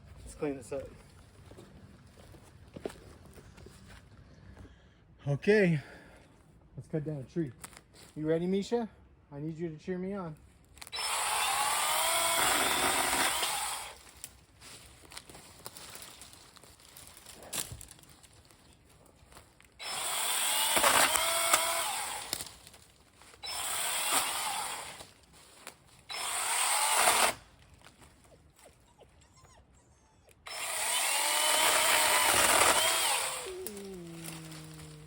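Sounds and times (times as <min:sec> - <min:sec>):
battery pruning saw cutting wood: 0:10.9 - 0:14.3, 0:19.8 - 0:25.2, 0:26.0 - 0:27.6, 0:30.4 - 0:35.0.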